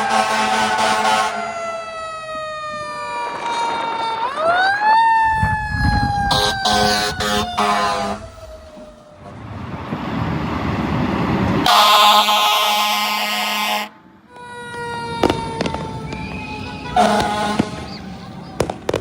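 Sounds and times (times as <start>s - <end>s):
air horn blasts: 0.0s - 1.4s, 6.2s - 8.6s, 11.6s - 14.0s, 16.2s - 17.9s
mechanical siren wailing: 0.0s - 9.5s, 14.3s - 19.0s.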